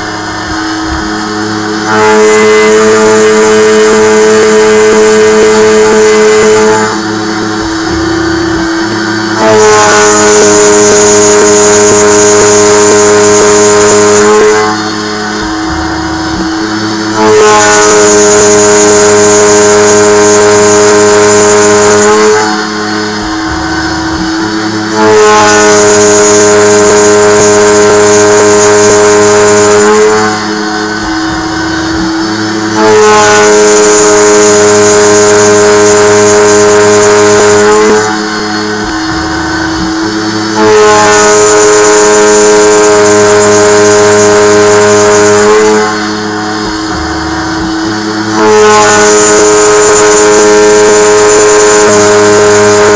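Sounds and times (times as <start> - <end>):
mill cutting steel ringing: 0.0 - 52.9.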